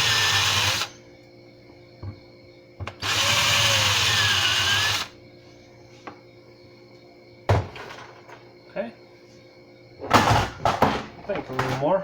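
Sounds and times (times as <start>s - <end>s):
power drill whine: 0.0s - 0.9s, 3.0s - 5.2s.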